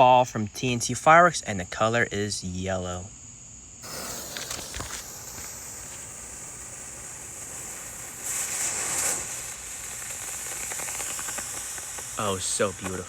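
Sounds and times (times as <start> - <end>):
crickets chirping: 0.0 - 13.0
firework clicks: 3.8 - 13.0
smoke firework hissing: 3.8 - 13.0.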